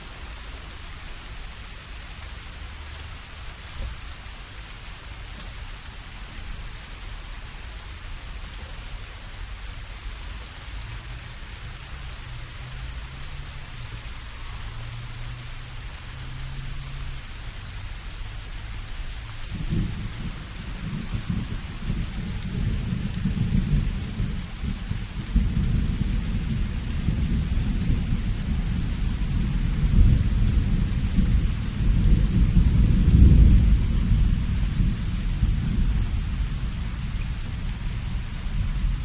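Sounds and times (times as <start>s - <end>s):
steady rain: 0.0s - 39.0s
rolling thunder: 19.4s - 39.0s.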